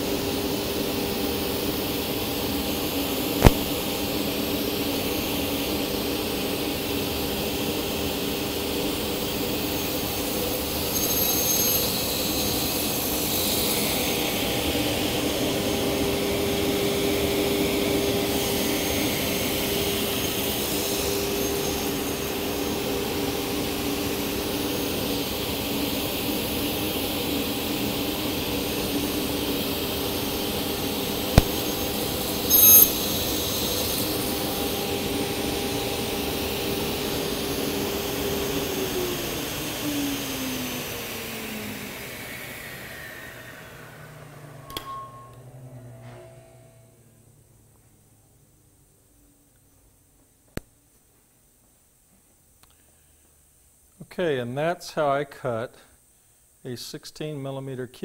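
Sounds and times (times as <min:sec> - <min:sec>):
table saw whining: 0:00.0 - 0:47.1
saw blade cutting wood: 0:32.5 - 0:34.1.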